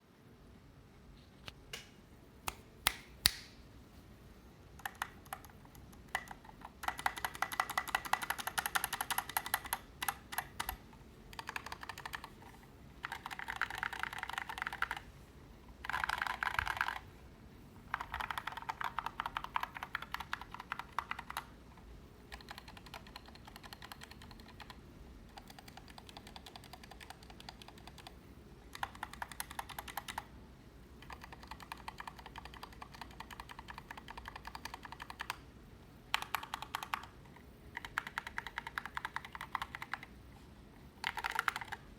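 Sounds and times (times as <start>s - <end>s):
mechanical keyboard typing: 4.8s - 15.1s, 15.8s - 17.1s, 17.9s - 21.5s, 22.3s - 30.3s, 31.0s - 35.4s, 36.1s - 40.2s, 41.0s - 41.9s.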